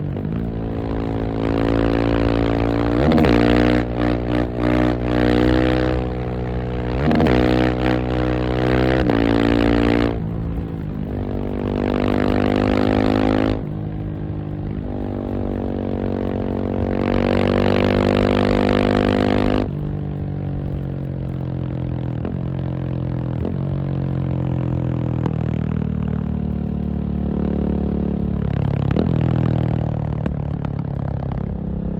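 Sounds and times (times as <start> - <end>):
motorcycle engine accelerating: 0.0 - 31.9.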